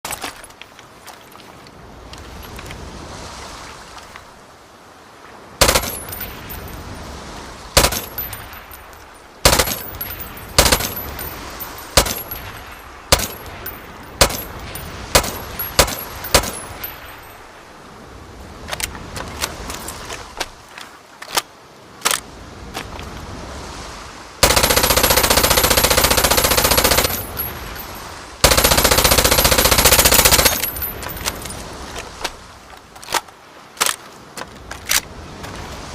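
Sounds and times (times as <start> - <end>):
submachine gun firing: 5.6 - 6.2, 7.8 - 8.2, 9.4 - 10.0, 10.6 - 11.2, 15.2 - 16.6, 24.4 - 27.3, 28.4 - 30.7.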